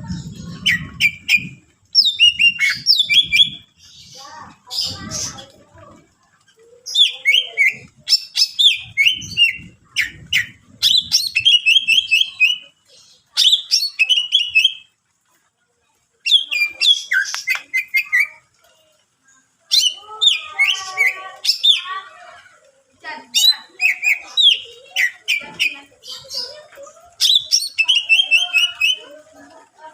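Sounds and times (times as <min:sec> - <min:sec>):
bird singing chirps and whistles: 0:00.2 - 0:03.7, 0:06.9 - 0:12.7, 0:13.4 - 0:14.8, 0:23.4 - 0:25.8, 0:27.2 - 0:29.0.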